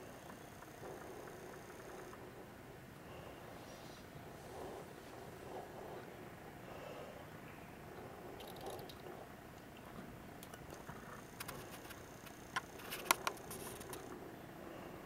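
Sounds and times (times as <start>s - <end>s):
sharp clicks: 10.4s - 14.1s.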